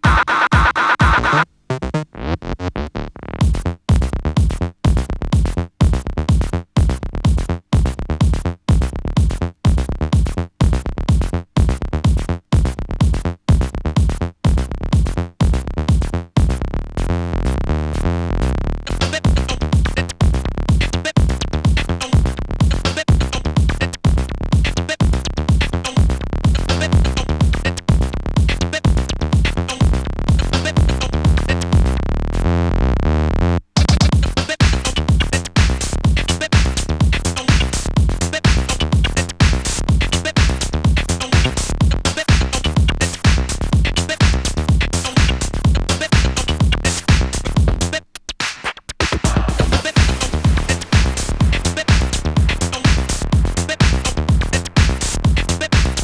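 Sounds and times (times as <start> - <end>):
electronic dance music from vinyl: 0.0 - 2.4, 4.4 - 9.4, 10.1 - 16.1, 18.9 - 31.9, 33.8 - 56.0.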